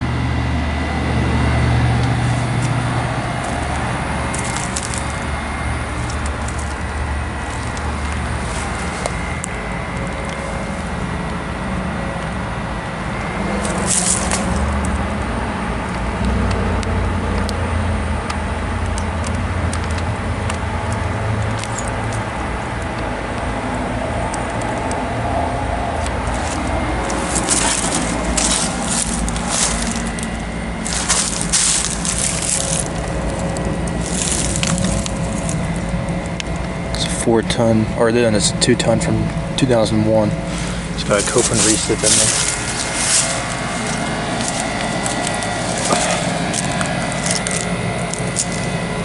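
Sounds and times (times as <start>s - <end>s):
faint steady whine: 0.0s - 49.0s
heat pump unit humming: 0.0s - 49.0s.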